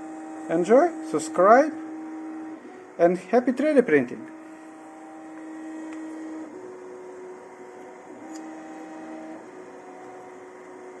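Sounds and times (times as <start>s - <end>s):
stepper motors whining: 4.0s - 10.9s.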